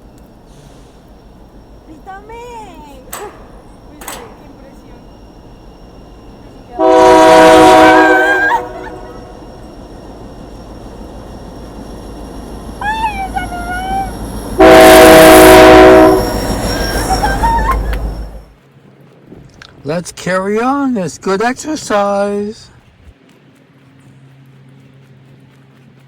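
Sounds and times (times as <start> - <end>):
low rumble of passing train: 0.0 - 26.0
locomotive air horn blasts: 6.1 - 9.7, 12.8 - 18.5.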